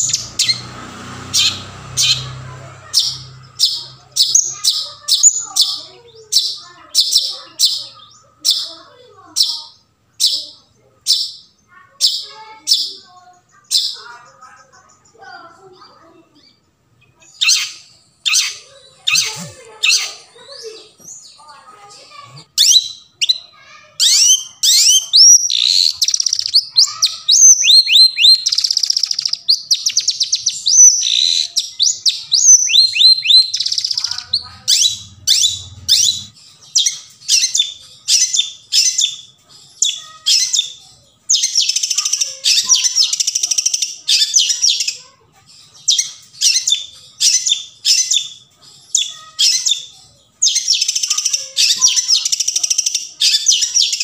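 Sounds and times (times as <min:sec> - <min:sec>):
shrike singing: 0:00.0 - 0:08.8, 0:16.3 - 0:45.0
harsh scratchy chattering: 0:17.3 - 0:22.6.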